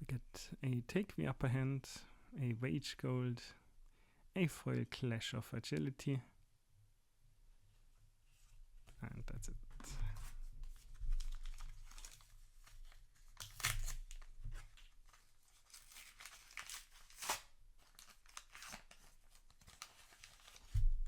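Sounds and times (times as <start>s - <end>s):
foil wrapper crinkling and tearing: 11.2s - 20.8s.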